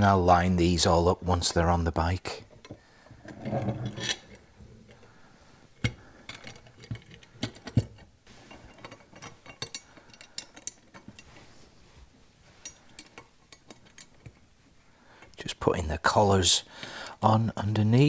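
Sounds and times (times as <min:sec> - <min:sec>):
small metal parts clicking and knocking: 0:02.5 - 0:05.0, 0:05.8 - 0:11.4, 0:12.6 - 0:14.6.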